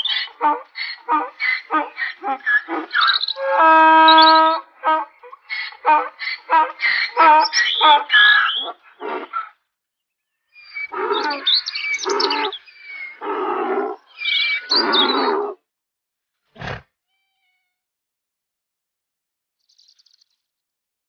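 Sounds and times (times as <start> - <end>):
animal calling raspily: 0.0 - 9.6, 10.6 - 15.6.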